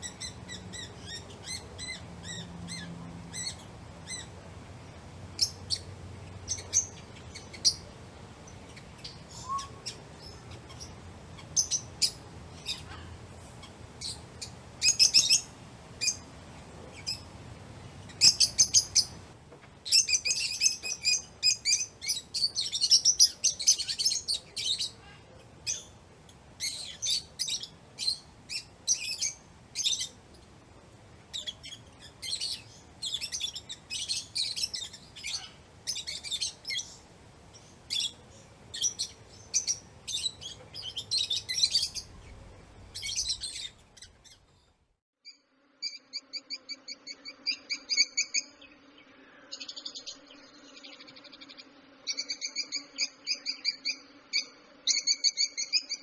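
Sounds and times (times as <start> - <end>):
lovebirds chirping: 0.0 - 44.8.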